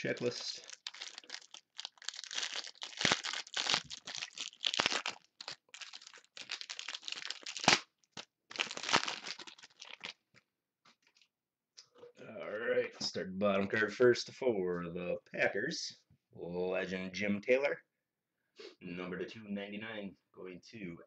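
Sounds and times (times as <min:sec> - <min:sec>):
packaging torn and crinkled: 0:00.0 - 0:10.2.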